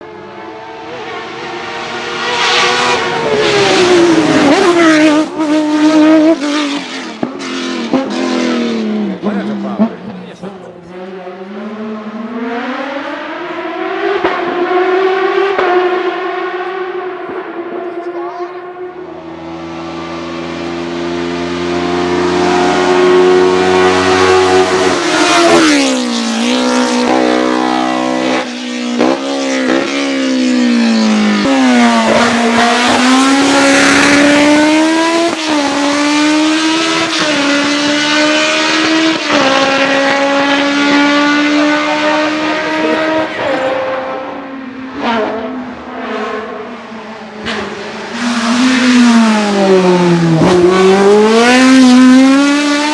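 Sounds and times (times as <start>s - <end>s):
race car passing at full throttle: 0.0s - 52.9s
race car upshifts: 0.3s - 21.0s, 31.3s - 52.9s.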